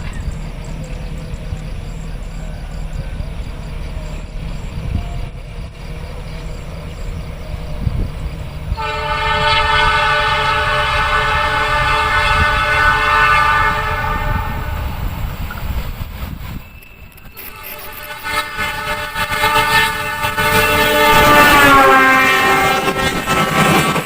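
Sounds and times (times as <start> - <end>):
train rumbling past: 0.0 - 24.0
locomotive horn blast: 8.8 - 14.9, 17.4 - 24.0.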